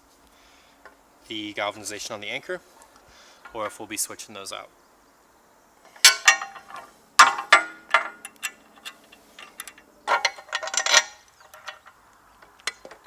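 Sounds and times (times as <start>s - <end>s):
metal tool clinking on bolts: 6.0s - 12.0s
metallic ring: 6.0s - 12.0s.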